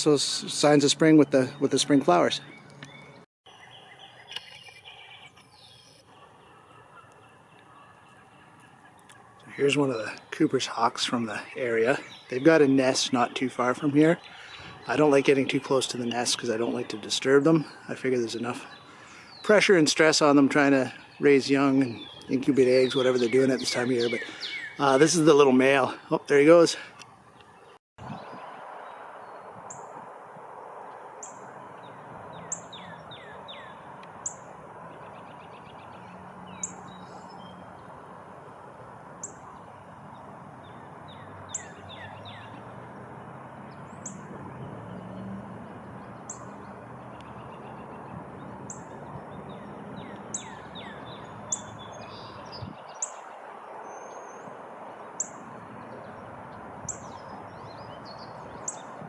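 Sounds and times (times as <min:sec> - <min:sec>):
lower down-slurred bird notes: 0:00.0 - 0:26.7, 0:39.1 - 0:59.0
high bird chirp: 0:00.4 - 0:26.4, 0:31.2 - 0:37.9, 0:39.2 - 0:42.9, 0:43.7 - 0:59.0.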